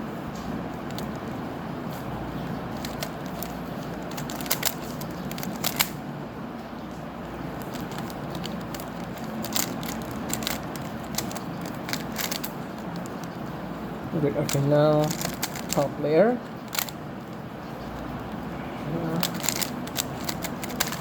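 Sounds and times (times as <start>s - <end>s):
low background hum: 0.0s - 21.0s
puzzle cube clicking: 0.9s - 1.4s, 2.7s - 6.0s, 7.6s - 13.4s, 14.4s - 15.9s, 16.6s - 17.0s, 19.1s - 21.0s.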